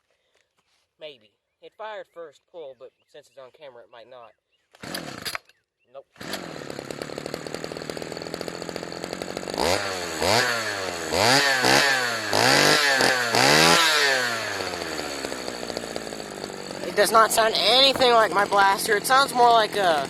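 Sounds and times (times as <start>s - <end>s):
small engine revving: 4.8s - 5.5s, 6.2s - 20.0s.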